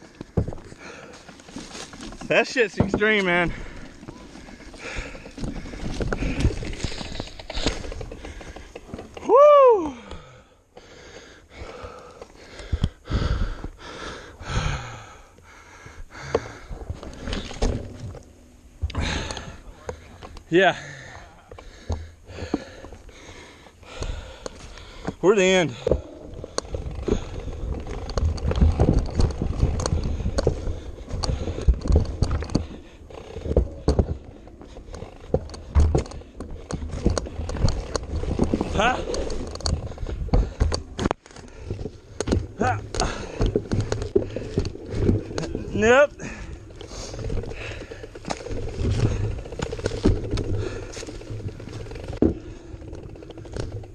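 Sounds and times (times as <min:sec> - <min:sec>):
person breathing hard: 0:03.5 - 0:08.8, 0:09.8 - 0:17.5, 0:18.9 - 0:25.2, 0:41.4 - 0:45.6.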